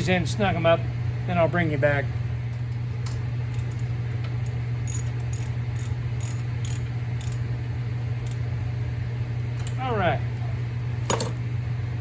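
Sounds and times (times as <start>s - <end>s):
ratchet wrench clicking: 4.8s - 7.4s.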